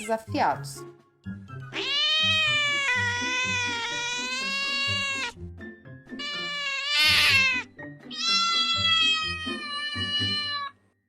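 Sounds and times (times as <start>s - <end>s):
cat meowing: 1.7s - 5.4s, 6.2s - 10.8s.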